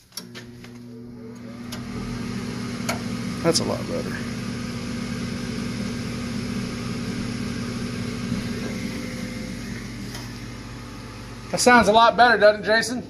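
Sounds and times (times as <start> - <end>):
furnace motor humming: 0.0 - 13.0.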